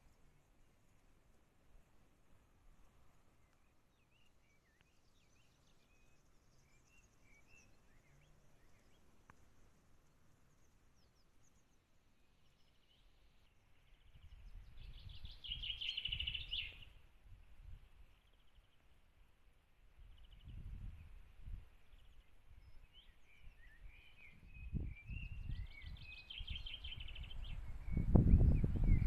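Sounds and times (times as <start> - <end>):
bird song of rapid notes: 0.0 - 29.0
birds chirping and whistling: 14.2 - 16.9, 22.9 - 29.0.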